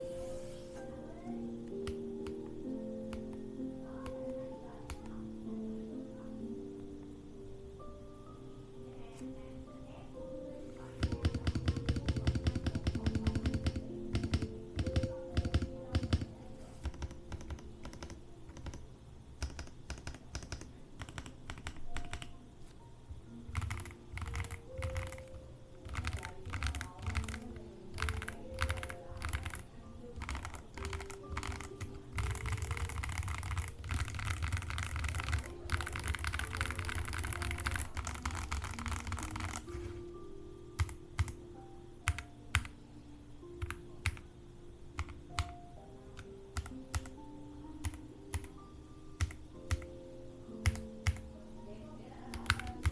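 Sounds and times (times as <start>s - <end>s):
typing on mechanical keyboard: 4.8s - 5.2s, 11.0s - 18.8s, 19.4s - 22.4s, 23.5s - 39.9s, 40.8s - 41.4s, 42.0s - 42.7s, 43.6s - 44.2s, 45.0s - 45.6s, 46.2s - 47.2s, 47.8s - 48.6s, 49.2s - 49.9s, 50.6s - 51.3s, 52.3s - 52.9s.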